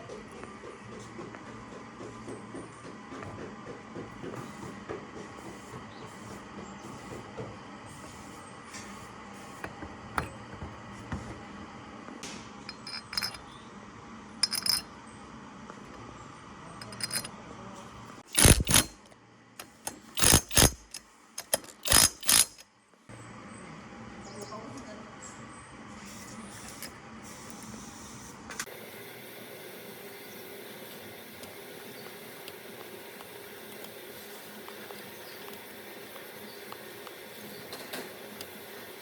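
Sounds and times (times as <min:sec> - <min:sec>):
small metal parts clinking: 0:12.7 - 0:13.6, 0:14.4 - 0:14.9, 0:16.8 - 0:17.3, 0:18.3 - 0:19.0, 0:19.9 - 0:22.6.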